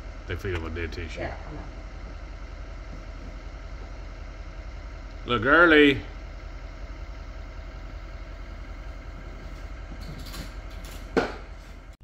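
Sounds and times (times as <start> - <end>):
low engine hum: 0.0 - 12.0.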